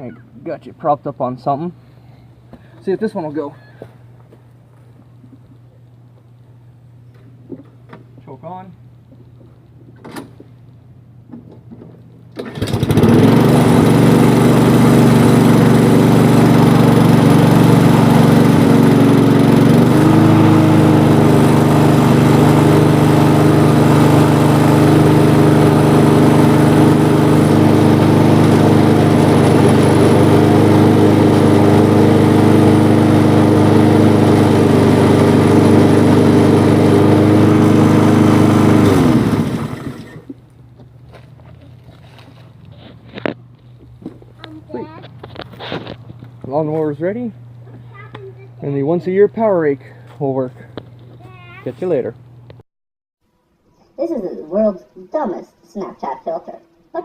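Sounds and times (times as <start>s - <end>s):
lawn mower pull-start: 12.3s - 40.4s
lawn mower engine running: 12.3s - 40.5s, 44.0s - 47.0s.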